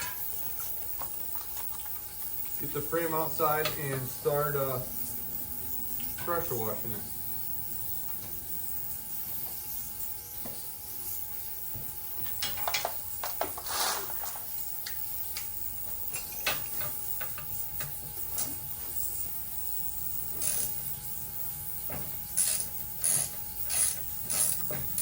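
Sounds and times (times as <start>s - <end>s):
ultrasonic cleaner humming: 0.0s - 25.0s
short hissing rustle: 13.6s - 14.4s.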